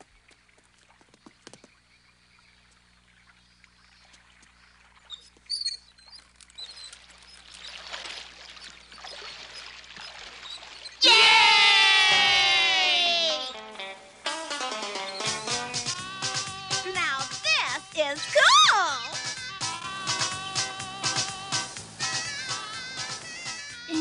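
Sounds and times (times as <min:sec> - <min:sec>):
water splashing and churning: 0:03.2 - 0:11.0.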